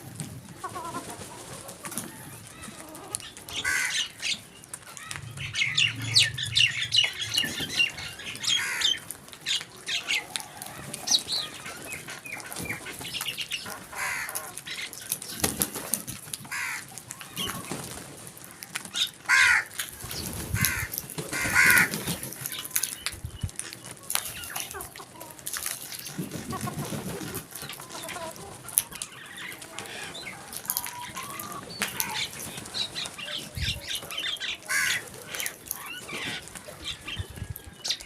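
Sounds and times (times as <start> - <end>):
crows calling: 2.5 - 15.0, 16.5 - 17.7, 18.9 - 20.0, 20.6 - 23.0, 27.8 - 36.5.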